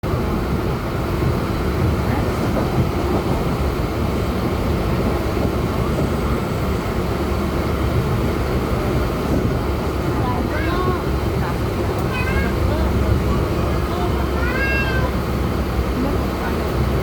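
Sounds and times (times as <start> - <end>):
train carriage rumbling and rattling: 0.0 - 17.0.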